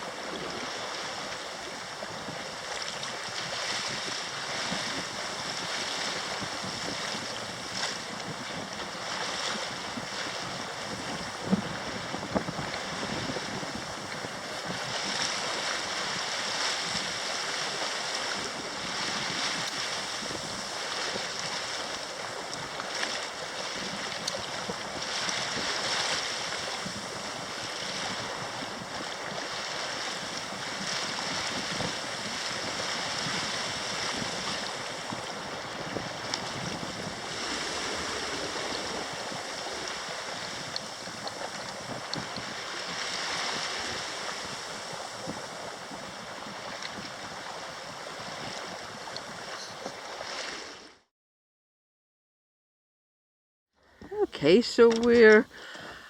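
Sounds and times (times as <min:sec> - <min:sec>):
sea water rushing: 0:00.0 - 0:51.1, 0:54.0 - 0:56.0
wind buffeting microphone: 0:00.1 - 0:50.2
wind rushing: 0:35.9 - 0:41.2.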